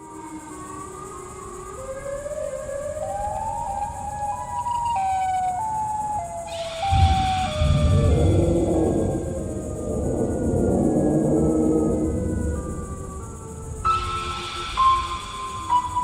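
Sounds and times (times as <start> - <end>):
synthesized siren-like tone: 6.4 - 16.0
deep booming thuds: 6.9 - 13.4.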